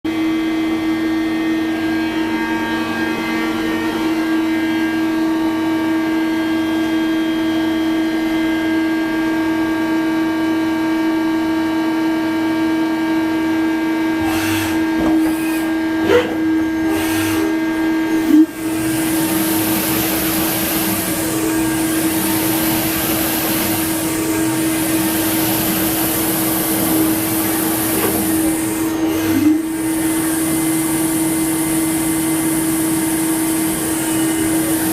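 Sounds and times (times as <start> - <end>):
lathe humming: 0.5 - 6.5, 13.8 - 34.9.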